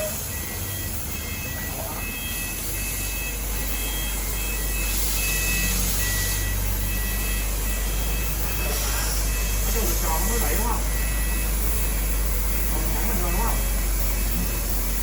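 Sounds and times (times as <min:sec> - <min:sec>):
faint high whining tones: 0:00.0 - 0:15.0
laser cutter humming: 0:00.0 - 0:15.0.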